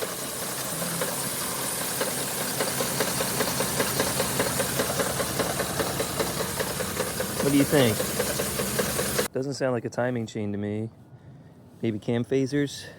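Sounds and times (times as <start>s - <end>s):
engine idling with knock: 0.0s - 9.3s.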